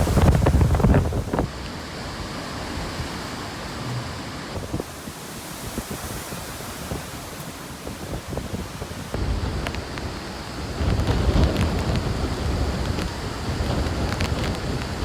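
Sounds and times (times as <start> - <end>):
hurricane wind and rain: 0.0 - 15.0
wind gust buffeting microphone: 0.0 - 15.0.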